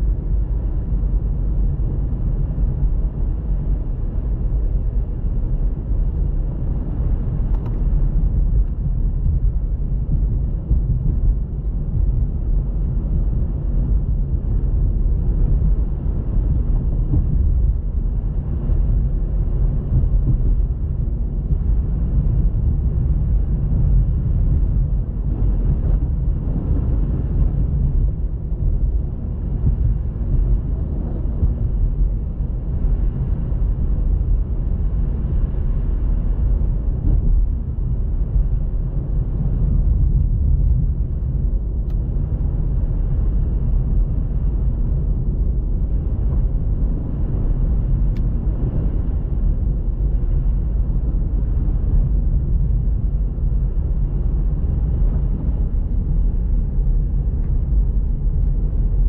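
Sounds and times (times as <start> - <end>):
car engine and road noise: 0.0 - 59.0.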